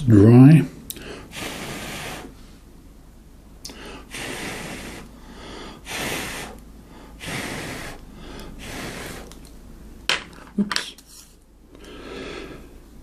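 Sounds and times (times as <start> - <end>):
hissing puffs of breath: 0.9 - 2.6, 3.7 - 9.5, 11.8 - 12.8.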